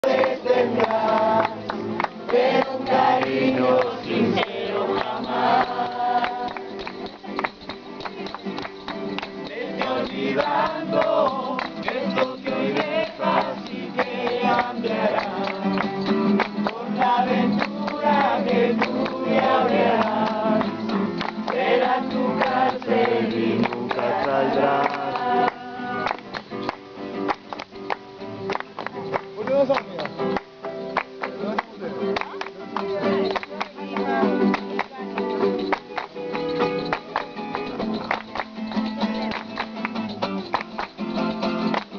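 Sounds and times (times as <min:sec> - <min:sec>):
voices singing: 0:00.0 - 0:07.5, 0:09.1 - 0:26.5
acoustic guitar strumming: 0:00.0 - 0:41.9
rhythmic beat of sharp strikes: 0:00.0 - 0:41.9.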